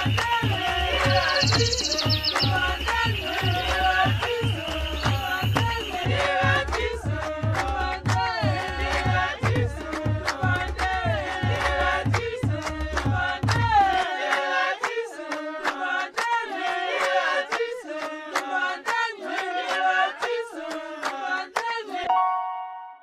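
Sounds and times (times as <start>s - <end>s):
clicking beat: 0.0s - 8.3s
upbeat song with sung melody: 0.0s - 22.4s.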